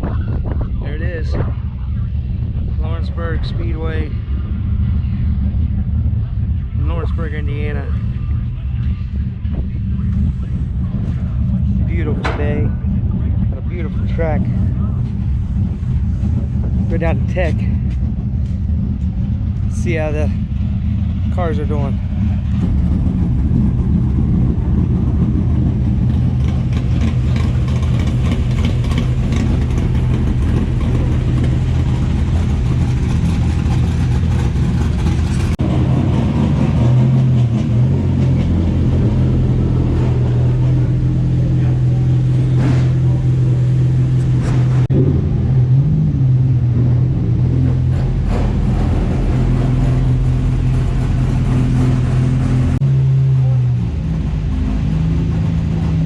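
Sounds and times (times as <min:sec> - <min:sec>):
vehicle engine droning: 0:00.0 - 0:56.0.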